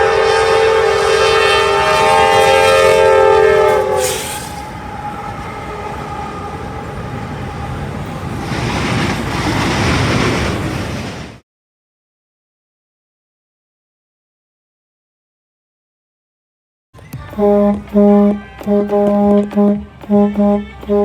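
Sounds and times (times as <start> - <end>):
truck air horn chord: 0.0 - 6.0, 17.2 - 21.0.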